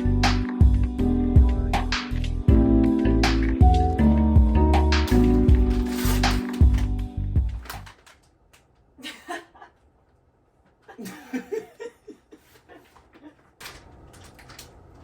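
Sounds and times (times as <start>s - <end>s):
background music: 0.0s - 8.0s
quiet laughing and chuckling: 9.0s - 10.0s, 10.8s - 13.6s.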